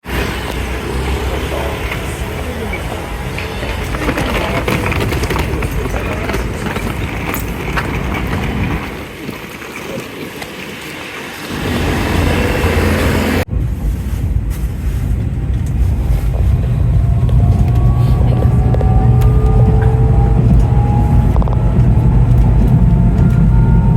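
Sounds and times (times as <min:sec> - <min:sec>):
steady rushing noise: 0:00.0 - 0:23.9
train running rumble: 0:00.0 - 0:23.9
wind on microphone: 0:00.1 - 0:23.9
faint rising whine: 0:15.8 - 0:23.9.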